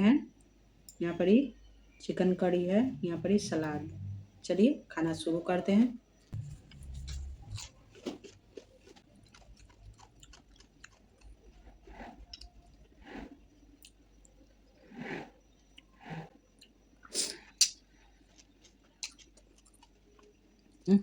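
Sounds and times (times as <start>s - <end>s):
person chewing food: 6.2s - 20.9s.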